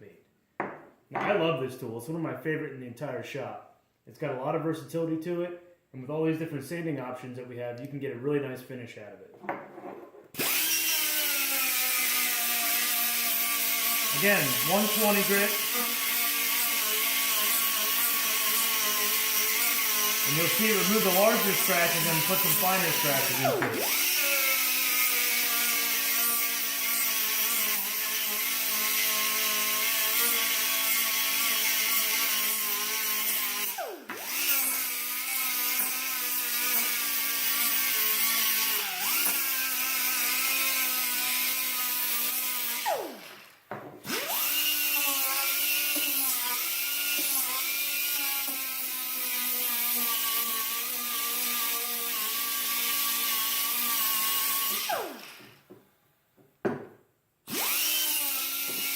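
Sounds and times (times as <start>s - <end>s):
die grinder sanding metal: 10.4s - 43.4s, 44.1s - 55.3s, 57.7s - 58.9s.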